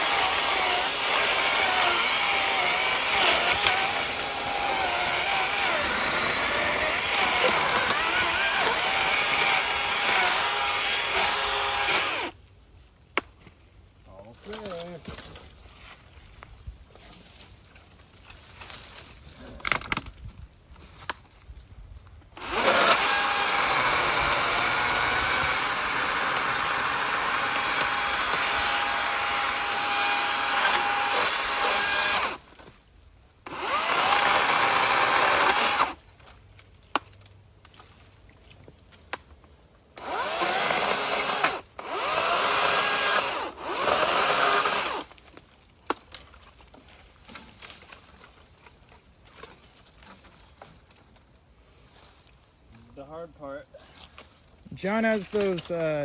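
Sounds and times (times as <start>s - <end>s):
battery chainsaw cutting wood: 0.0s - 12.4s, 22.4s - 32.5s, 33.5s - 36.0s, 40.0s - 45.2s.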